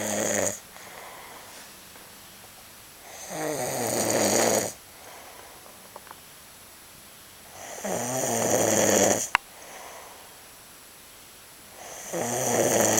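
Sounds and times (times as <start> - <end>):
loud rattling snore: 0.0 - 0.6, 3.1 - 4.8, 7.5 - 9.8, 11.8 - 12.9
soft breath out: 0.7 - 2.1, 4.8 - 6.0, 9.3 - 10.6.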